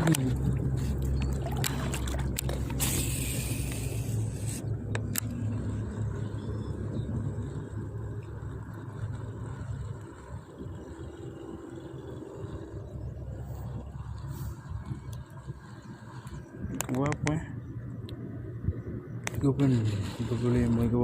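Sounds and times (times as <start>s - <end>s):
motor engine humming: 0.0s - 21.0s
short hiss: 2.8s - 4.6s.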